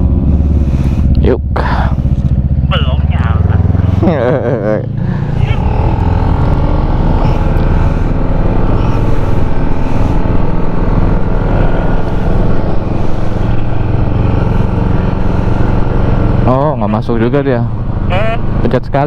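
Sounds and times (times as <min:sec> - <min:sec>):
scooter engine running: 0:00.0 - 0:17.0
wind and road noise: 0:00.0 - 0:19.0.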